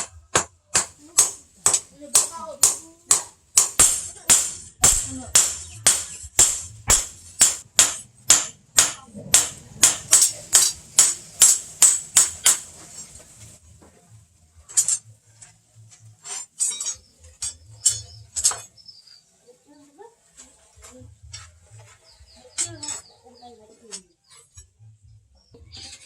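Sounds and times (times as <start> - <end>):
hammer striking blade on anvil: 0.0 - 12.7.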